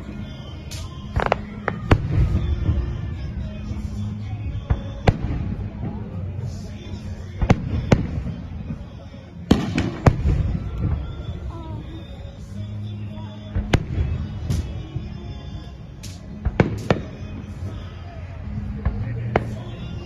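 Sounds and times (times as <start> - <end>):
fireworks bangs: 0.7 - 6.1, 7.3 - 11.5, 13.6 - 15.0, 16.0 - 17.8.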